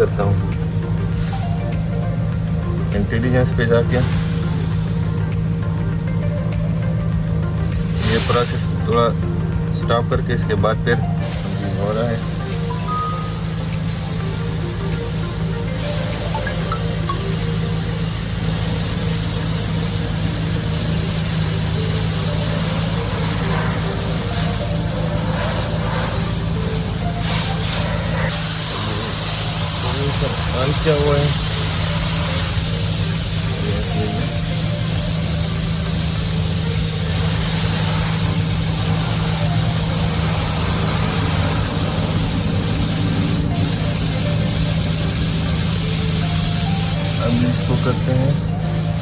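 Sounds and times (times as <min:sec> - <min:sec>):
constant hiss: 0:00.0 - 0:49.0
low engine drone: 0:00.0 - 0:49.0
low machine hum: 0:11.0 - 0:49.0.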